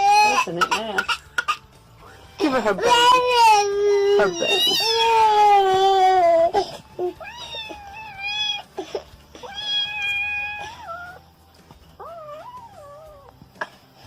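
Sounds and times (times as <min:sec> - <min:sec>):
pet crying: 0:02.8 - 0:11.2, 0:12.0 - 0:13.4.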